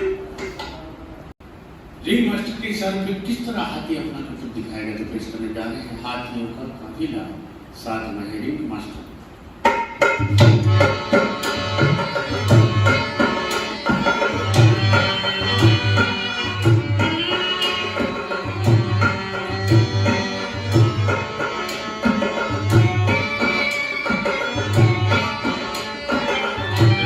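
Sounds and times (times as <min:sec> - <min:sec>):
sustained melodic instrument: 0:10.7 - 0:27.0.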